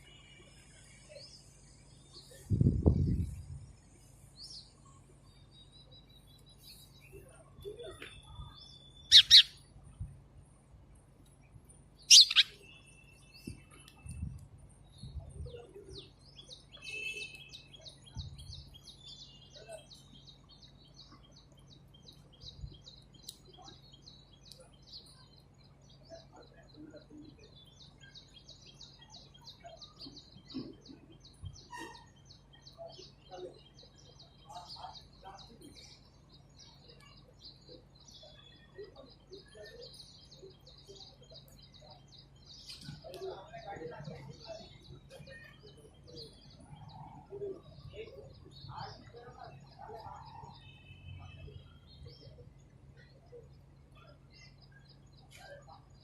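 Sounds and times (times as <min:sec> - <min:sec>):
small birds chirping: 0:00.0 - 0:56.0
high bird twittering: 0:08.2 - 0:09.6, 0:12.1 - 0:12.8.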